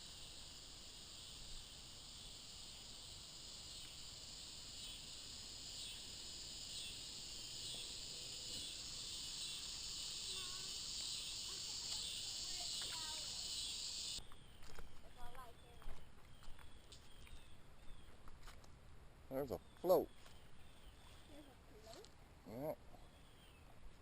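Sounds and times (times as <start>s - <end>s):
shrill chorus of insects: 0.0s - 14.2s.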